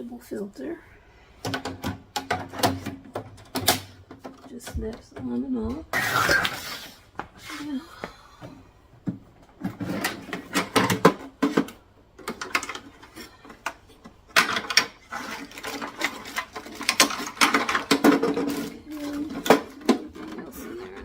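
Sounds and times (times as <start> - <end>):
plastic parts clicking and clattering: 1.4 - 5.4, 9.0 - 21.0.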